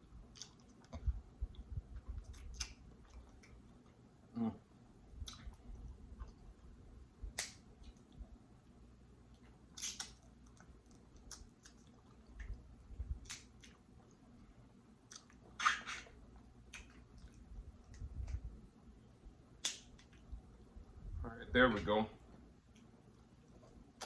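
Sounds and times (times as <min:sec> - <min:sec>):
chewing and wet mouth sounds: 0:00.0 - 0:04.2, 0:05.1 - 0:08.4, 0:09.2 - 0:18.6.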